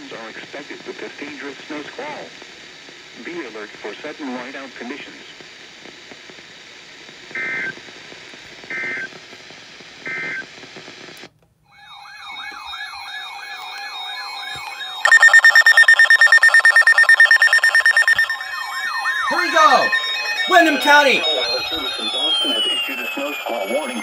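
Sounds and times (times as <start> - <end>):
digital data bursts: 11.8 - 24.0
rapidly pulsing alert beep: 11.8 - 24.0
warbling alert tone: 11.8 - 24.0.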